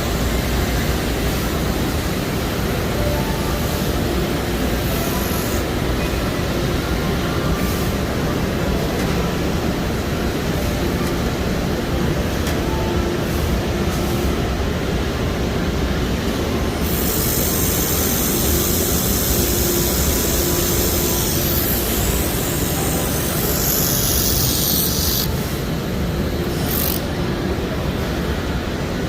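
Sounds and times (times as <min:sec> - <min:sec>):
welder high hiss: 0:16.9 - 0:25.3.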